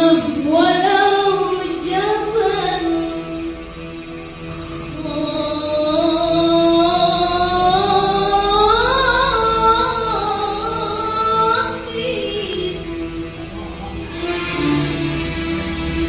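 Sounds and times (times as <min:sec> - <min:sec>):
woman singing ornamented line: 0:00.0 - 0:03.6, 0:04.9 - 0:13.3.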